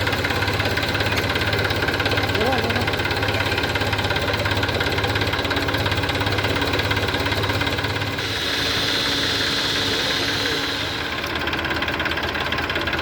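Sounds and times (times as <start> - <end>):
heavy diesel engine chugging: 0.0 - 13.0
high steady whine: 8.1 - 11.3.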